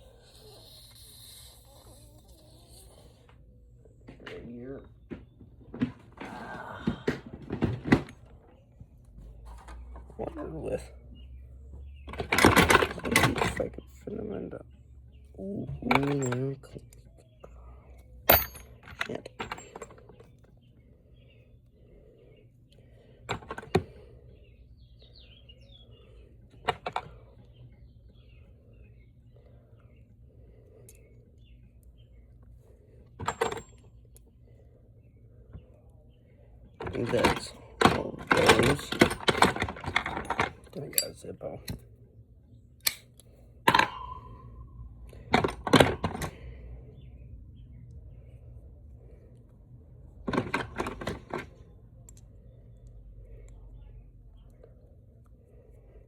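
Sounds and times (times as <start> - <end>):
metal tools clacking in a tool box: 12.1 - 13.8, 15.6 - 16.9, 18.2 - 20.4, 33.2 - 33.9, 36.8 - 41.8, 42.8 - 46.4, 50.3 - 52.2
metal tool clinking: 18.3 - 20.3, 43.7 - 46.3
faint bird chirps: 23.8 - 33.1, 43.9 - 45.3.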